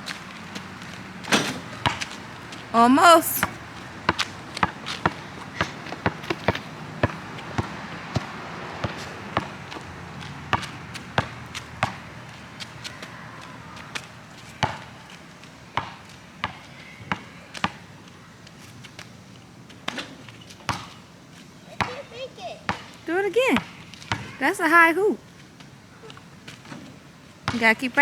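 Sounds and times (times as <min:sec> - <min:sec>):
basketball bouncing: 0:01.8 - 0:02.1, 0:03.3 - 0:09.8, 0:10.5 - 0:12.0.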